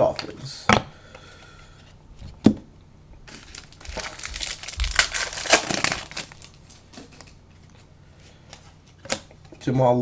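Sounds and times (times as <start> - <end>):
card pack wrapper crinkling: 3.3 - 7.8.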